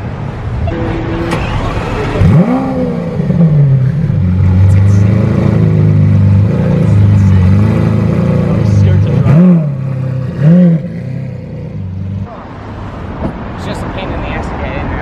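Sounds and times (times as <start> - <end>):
car engine revving: 0.4 - 12.3.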